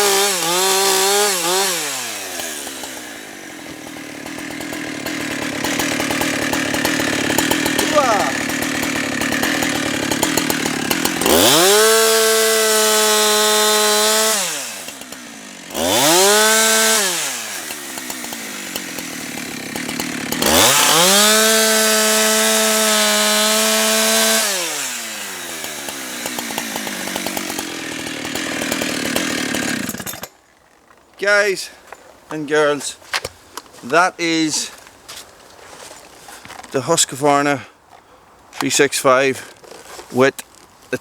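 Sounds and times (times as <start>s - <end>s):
chainsaw revving: 0.0s - 30.4s.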